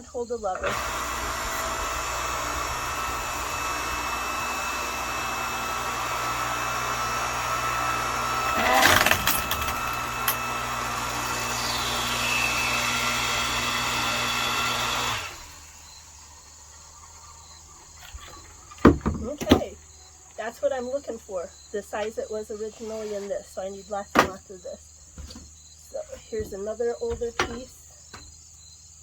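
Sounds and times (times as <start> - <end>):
log splitter motor whine: 0.4 - 24.4
wood cracking apart: 0.6 - 15.8.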